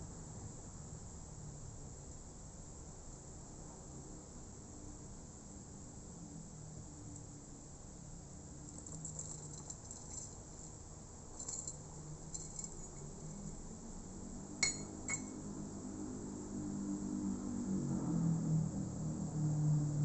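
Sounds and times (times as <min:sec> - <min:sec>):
handling rustles: 0:08.7 - 0:10.8, 0:11.4 - 0:13.6
hard objects clinking: 0:08.7 - 0:10.8, 0:11.4 - 0:13.6, 0:14.6 - 0:15.4.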